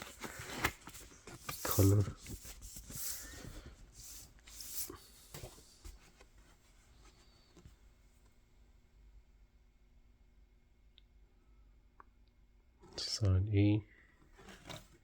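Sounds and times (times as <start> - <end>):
paper sleeve rustling: 0.0 - 7.4.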